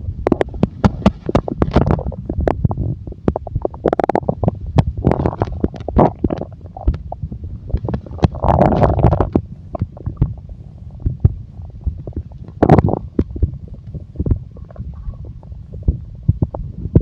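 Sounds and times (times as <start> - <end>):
stomach growling and gurgling: 0.0 - 17.0.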